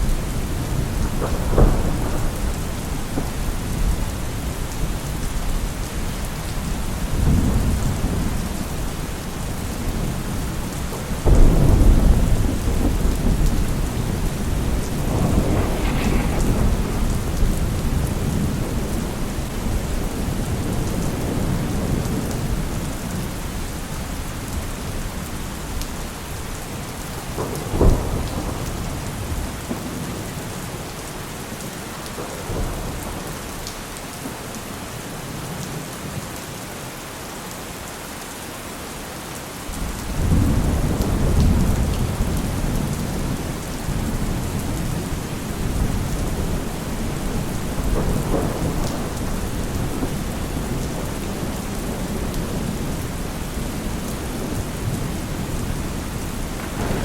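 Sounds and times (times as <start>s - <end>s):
deep rumble of thunder: 0.0s - 31.0s, 39.8s - 57.0s
heavy rain falling: 0.0s - 57.0s
sharp thunder clap: 0.5s - 4.4s, 11.2s - 22.0s, 56.6s - 57.0s.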